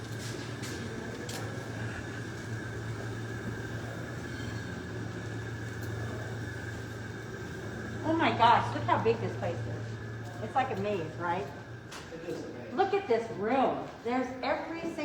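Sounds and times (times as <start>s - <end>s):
machine hum: 0.0s - 14.7s.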